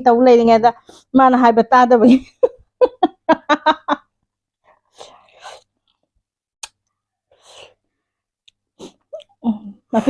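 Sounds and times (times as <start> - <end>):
person breathing sounds: 7.3 - 8.1.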